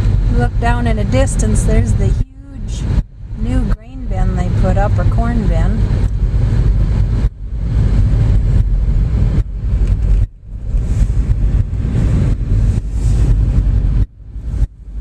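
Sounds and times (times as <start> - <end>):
car interior rumble: 0.0 - 15.0.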